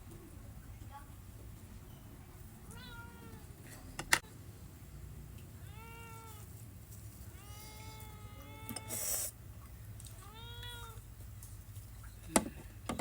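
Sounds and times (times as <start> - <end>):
cat meowing: 2.6 - 3.5, 5.6 - 6.5, 7.3 - 9.2, 10.2 - 11.0.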